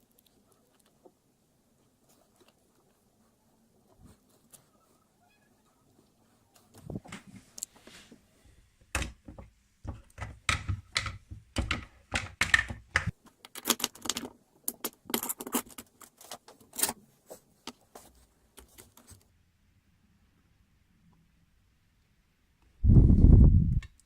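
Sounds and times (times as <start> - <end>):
hard objects clicking and knocking: 8.9 - 16.9.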